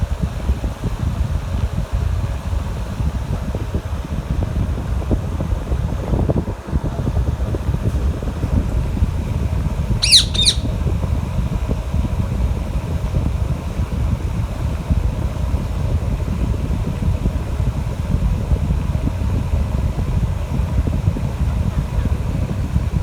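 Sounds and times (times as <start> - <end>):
wind rumble on microphone: 0.0 - 23.0
parrot squawking: 10.0 - 10.8.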